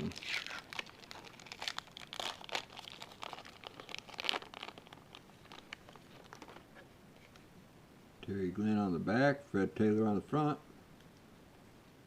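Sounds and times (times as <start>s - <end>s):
foil wrapper crinkling: 0.0s - 6.8s.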